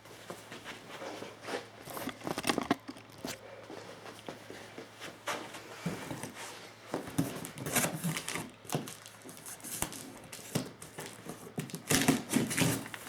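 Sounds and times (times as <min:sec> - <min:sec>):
packaging rustling: 0:01.8 - 0:03.4, 0:07.0 - 0:13.0.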